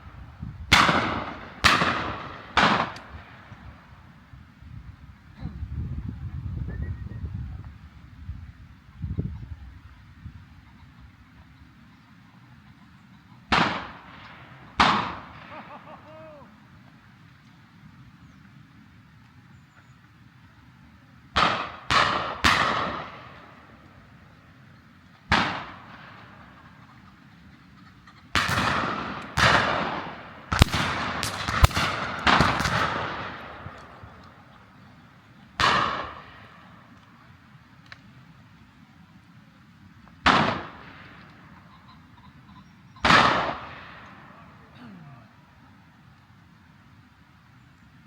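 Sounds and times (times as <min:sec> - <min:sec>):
shotgun shots: 0:00.7 - 0:03.5, 0:13.5 - 0:15.8, 0:21.4 - 0:23.6, 0:25.3 - 0:26.7, 0:28.4 - 0:34.4, 0:35.6 - 0:36.7, 0:40.2 - 0:41.3, 0:43.0 - 0:44.3
faint high calls: 0:15.5 - 0:16.8, 0:41.5 - 0:43.1.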